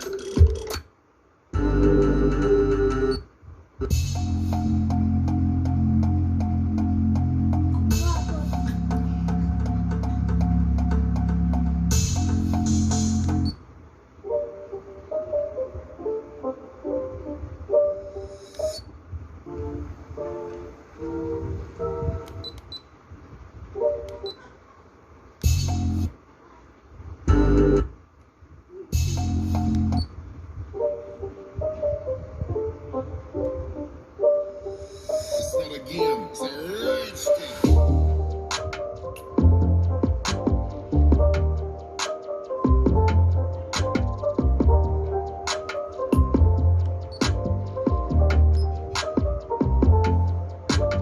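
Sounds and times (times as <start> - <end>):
bass-heavy electronic music: 1.6 - 3.2, 3.8 - 13.6, 25.4 - 26.2, 27.3 - 28.0, 29.0 - 30.1, 35.2 - 51.0
plucked-string melody over low beat: 3.9 - 13.4.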